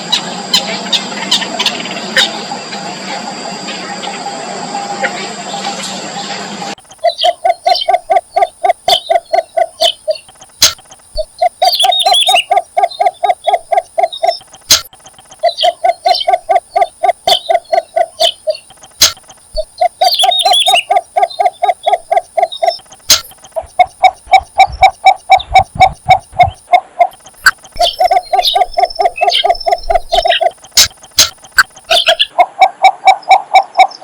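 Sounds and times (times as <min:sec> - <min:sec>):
higher chattering bird notes: 0:06.8 - 0:32.4
bird low clucking notes: 0:06.8 - 0:34.0.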